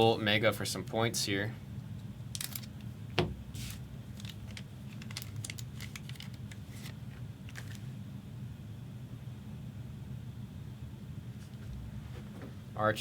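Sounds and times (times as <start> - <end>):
steady low hum: 0.0 - 13.0
cards rustling and clicking: 3.6 - 7.9.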